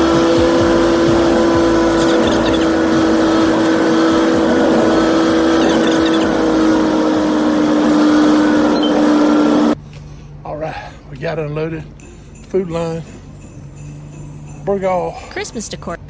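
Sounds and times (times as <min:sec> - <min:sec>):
motor drone with strong hum: 0:00.0 - 0:10.3.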